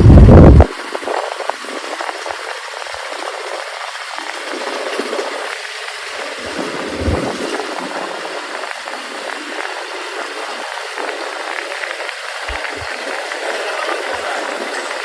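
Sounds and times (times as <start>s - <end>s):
traffic and road noise: 11.6s - 15.0s.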